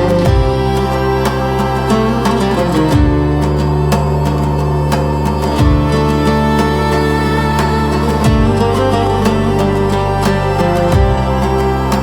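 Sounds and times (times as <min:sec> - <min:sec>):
plucked string notes: 0:00.0 - 0:12.0
sustained low tones: 0:00.0 - 0:12.0.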